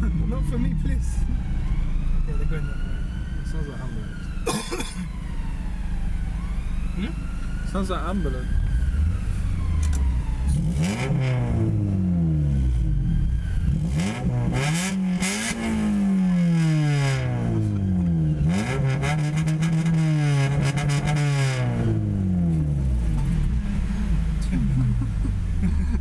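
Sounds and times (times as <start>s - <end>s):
engine crackling: 5.0s - 26.0s
car engine revving: 5.5s - 26.0s.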